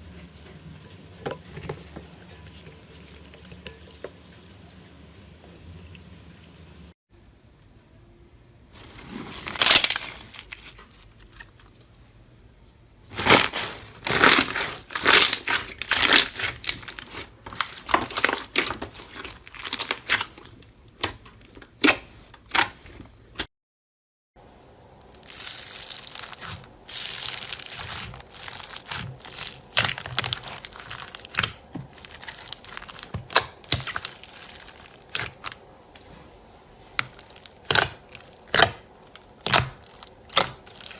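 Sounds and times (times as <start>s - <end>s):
slime squeezed crackling: 13.1s - 22.8s, 25.0s - 35.6s, 36.9s - 40.9s.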